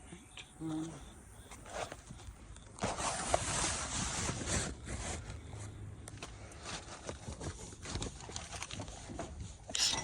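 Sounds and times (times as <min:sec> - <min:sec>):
metal scraping and rattling: 0:09.7 - 0:10.0.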